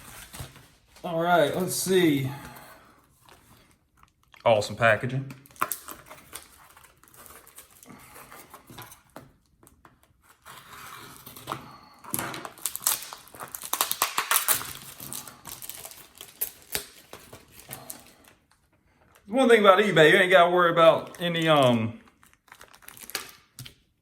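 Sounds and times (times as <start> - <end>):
packing material crinkling: 5.4 - 9.1, 10.1 - 19.4, 20.8 - 24.0.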